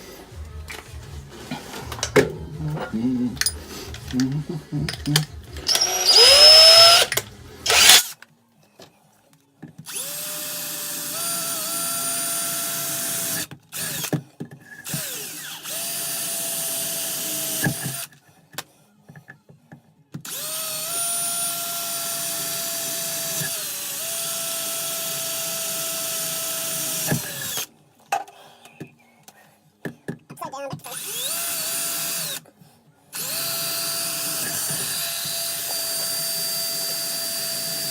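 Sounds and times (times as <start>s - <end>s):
power drill boring through wall: 5.0s - 8.2s, 9.9s - 14.1s, 14.8s - 18.1s, 20.3s - 27.7s, 30.9s - 32.4s, 33.2s - 37.9s.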